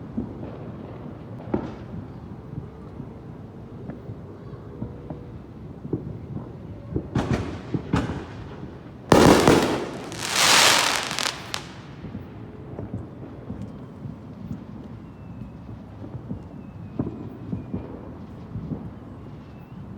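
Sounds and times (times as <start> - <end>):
fireworks popping and cracking: 9.1 - 11.9.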